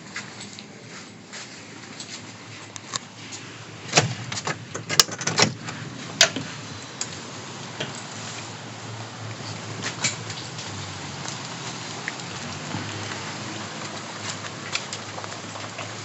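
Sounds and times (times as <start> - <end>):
sharp knocks and clicks: 3.9 - 5.6.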